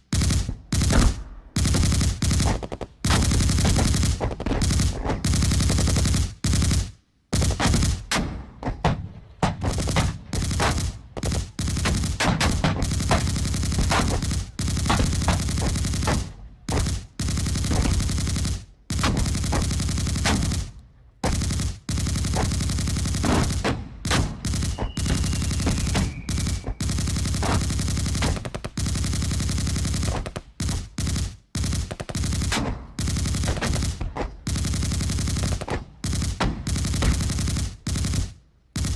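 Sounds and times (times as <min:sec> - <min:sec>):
machine gun firing: 0:00.0 - 0:08.3, 0:09.5 - 0:38.9.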